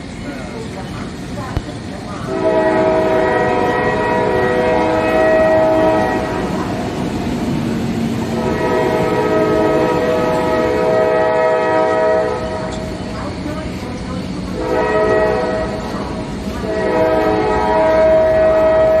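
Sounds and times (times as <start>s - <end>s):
train horn blasts: 2.3s - 6.8s, 8.3s - 12.9s, 14.6s - 19.0s.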